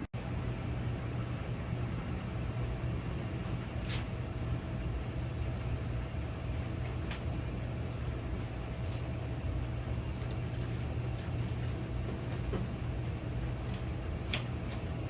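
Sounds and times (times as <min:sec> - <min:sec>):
low machinery hum: 0:00.0 - 0:15.0.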